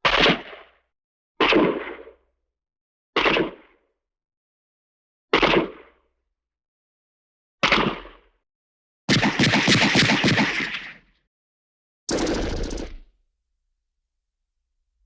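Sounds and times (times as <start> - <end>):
gunshots: 9.1 - 11.1, 12.1 - 13.0.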